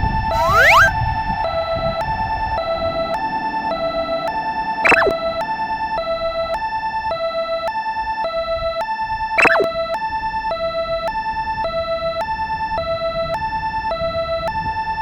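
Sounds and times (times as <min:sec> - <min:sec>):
falling whistle-like sweep: 0:00.3 - 0:01.0, 0:04.8 - 0:05.4, 0:09.4 - 0:09.7
level-crossing alarm two tones: 0:00.3 - 0:01.0, 0:04.8 - 0:05.4, 0:09.4 - 0:09.9.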